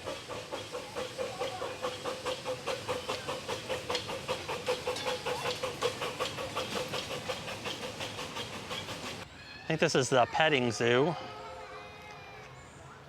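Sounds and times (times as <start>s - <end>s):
miniature train clacking on rails: 0.0s - 9.3s.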